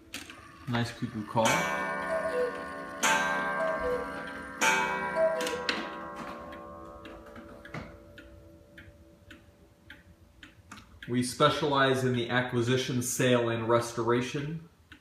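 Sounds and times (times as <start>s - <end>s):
clock ticking: 0.2s - 11.6s
clock gong strike: 1.4s - 8.6s
two-note cuckoo call: 2.1s - 2.7s, 3.6s - 4.2s, 5.2s - 5.8s.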